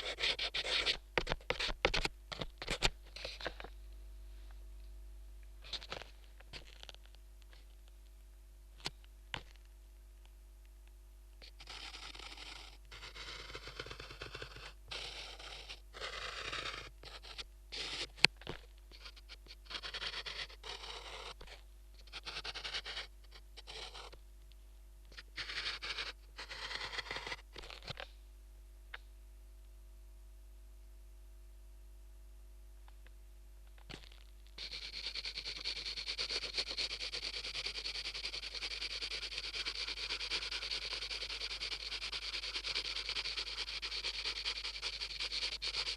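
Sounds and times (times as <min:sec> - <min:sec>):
low steady hum: 0:00.0 - 0:45.9
drawing strokes scraping: 0:11.6 - 0:18.1, 0:19.0 - 0:24.2, 0:34.6 - 0:45.9.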